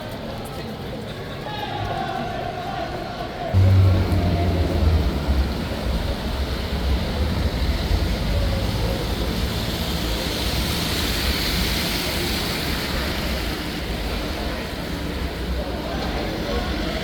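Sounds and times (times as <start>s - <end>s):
street traffic rumble: 3.4s - 17.0s
vehicle passing with hiss: 3.6s - 15.4s.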